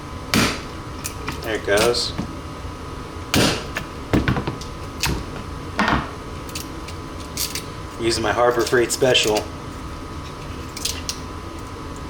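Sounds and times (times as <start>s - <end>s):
hand tools striking: 0.4s - 2.4s, 3.4s - 7.7s.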